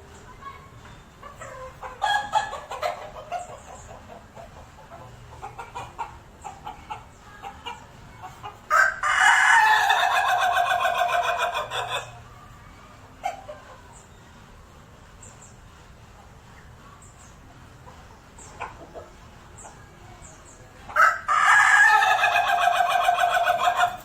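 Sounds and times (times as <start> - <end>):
chicken clucking: 0.9 - 12.6, 13.2 - 14.1, 17.8 - 24.0
rooster stuttering crow: 21.0 - 24.0.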